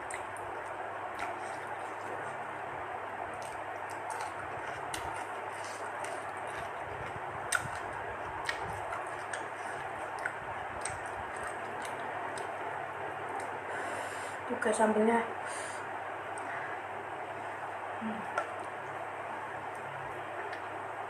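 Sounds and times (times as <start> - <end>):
wet chewing clicks and smacks: 0.0 - 2.0, 3.3 - 12.6
steady background hiss: 0.0 - 21.0.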